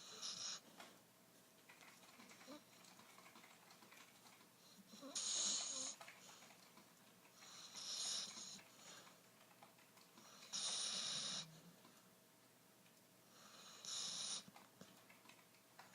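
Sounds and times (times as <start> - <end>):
snoring: 0.0 - 0.6, 4.9 - 6.0, 7.4 - 8.6, 10.2 - 11.6, 13.4 - 14.5.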